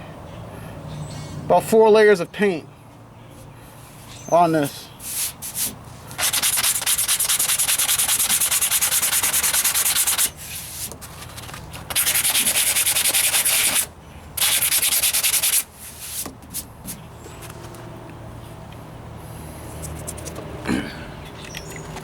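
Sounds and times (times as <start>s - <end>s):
sandpaper scraping on filler: 5.0s - 16.7s.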